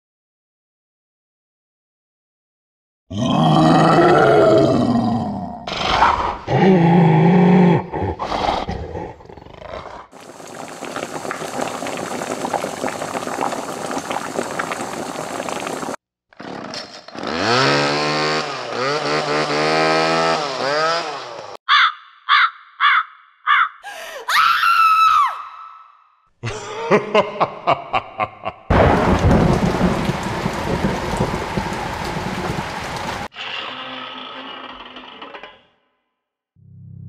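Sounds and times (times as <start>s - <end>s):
wavering creature cry: 3.1s - 8.4s, 21.7s - 25.9s
creature roars and growls: 3.1s - 10.2s.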